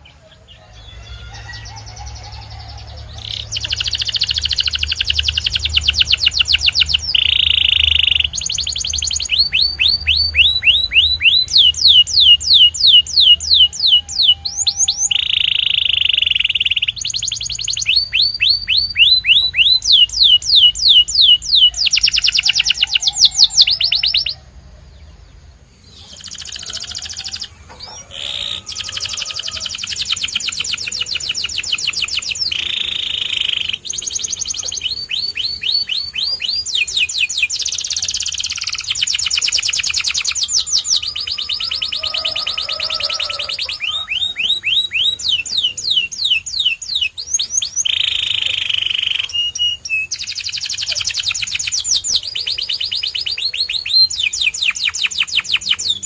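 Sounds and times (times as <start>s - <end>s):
canary singing: 0.0s - 56.0s.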